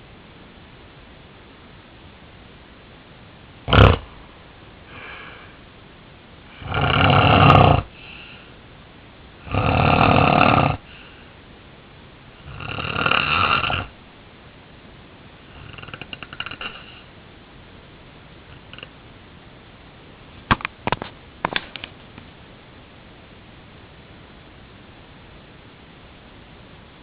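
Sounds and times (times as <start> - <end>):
man snoring: 3.7 - 4.0, 6.5 - 8.0, 9.4 - 10.9, 12.4 - 14.0, 15.5 - 16.8.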